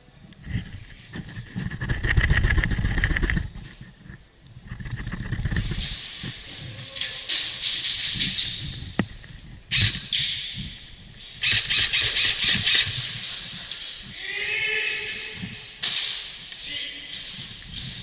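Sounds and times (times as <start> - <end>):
rapid airsoft gun fire: 11.4 - 12.9.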